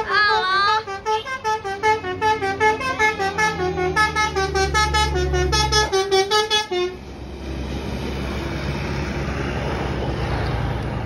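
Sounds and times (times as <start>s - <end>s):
multi-tone bus horn melody: 0.0s - 7.1s
bus engine low hum: 0.0s - 11.0s.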